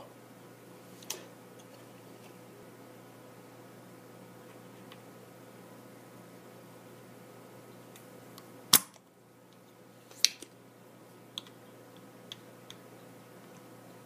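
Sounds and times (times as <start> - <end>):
desoldering pump snapping: 8.4 - 9.0.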